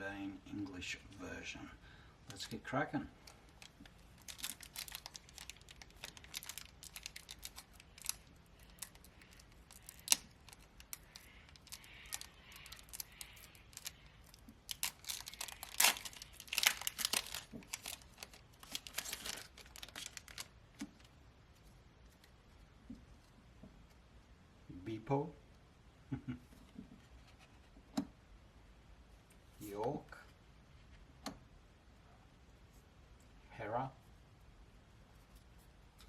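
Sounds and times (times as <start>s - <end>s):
foil pack crinkling: 3.2s - 21.1s.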